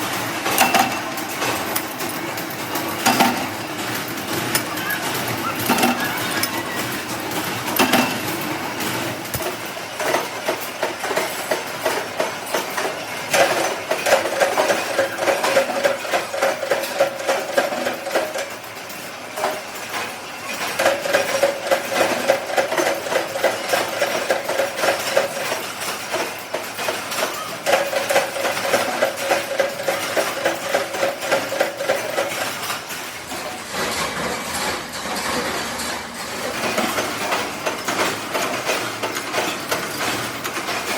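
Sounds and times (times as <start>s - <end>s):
machine running: 0.0s - 40.9s.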